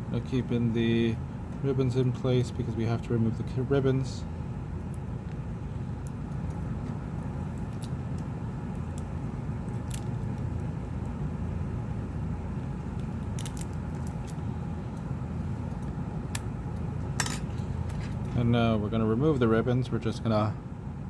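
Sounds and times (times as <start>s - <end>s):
low background rumble: 0.0s - 21.0s.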